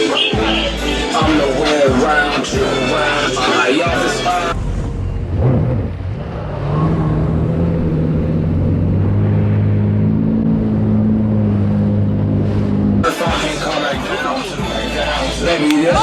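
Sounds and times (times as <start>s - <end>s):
jet ski engine revving: 0.5s - 13.1s.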